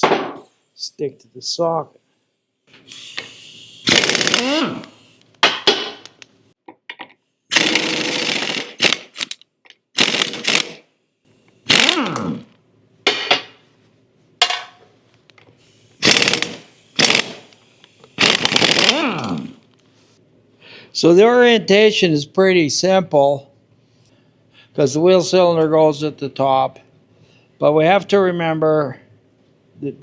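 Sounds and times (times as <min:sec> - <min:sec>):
power tool bursts: 0:02.8 - 0:05.1, 0:07.5 - 0:09.3, 0:10.0 - 0:10.8, 0:11.6 - 0:12.4, 0:15.7 - 0:19.6
tool spinning down whine: 0:02.8 - 0:05.1, 0:11.6 - 0:12.5, 0:15.9 - 0:19.5.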